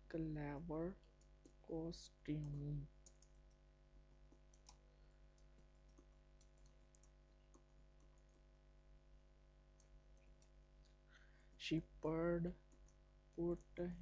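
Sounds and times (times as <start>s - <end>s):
steady low hum: 0.0s - 14.0s
faint keystrokes on keyboard: 2.4s - 3.6s, 4.3s - 8.5s.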